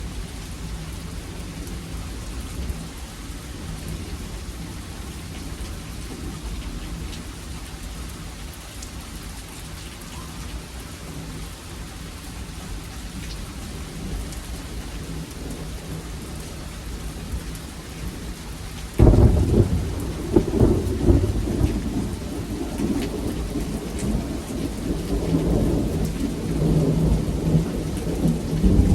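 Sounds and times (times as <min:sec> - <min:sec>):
steady rain: 0:00.0 - 0:28.9
thunder crack and rumble: 0:19.0 - 0:28.9.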